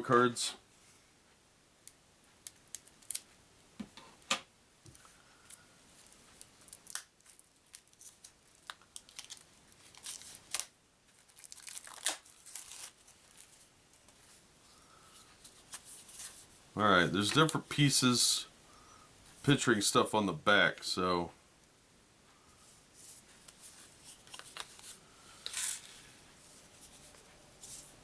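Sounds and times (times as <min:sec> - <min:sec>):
card pack wrapper crinkling: 0:02.5 - 0:03.3, 0:06.0 - 0:13.7, 0:23.5 - 0:25.9.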